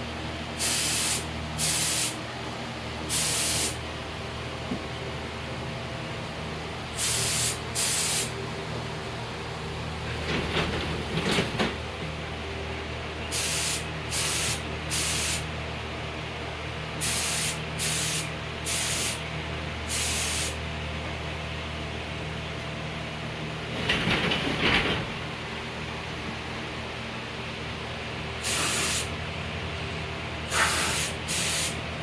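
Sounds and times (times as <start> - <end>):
paint spraying hiss: 0.6 - 2.2, 3.1 - 3.8, 7.0 - 8.3, 13.3 - 15.4, 17.0 - 19.2, 19.9 - 20.6, 28.4 - 29.1, 30.5 - 31.8
rattling scuffle: 10.1 - 12.0, 23.7 - 25.3.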